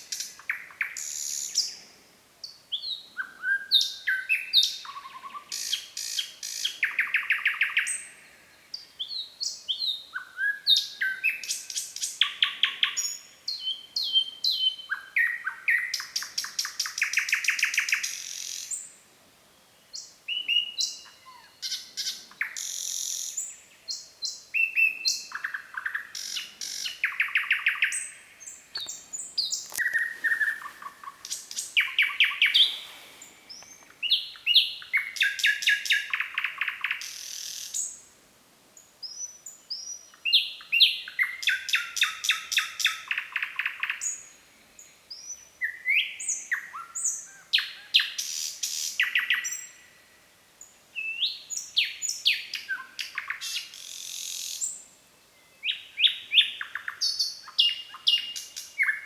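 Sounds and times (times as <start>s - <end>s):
nightingale singing: 2.4s - 18.9s, 19.9s - 38.0s, 51.0s - 59.0s.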